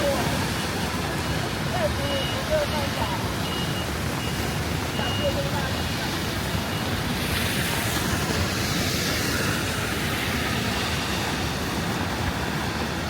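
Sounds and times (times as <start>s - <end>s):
passing traffic: 0.0s - 13.0s
vehicle passing by hiss: 6.0s - 13.0s.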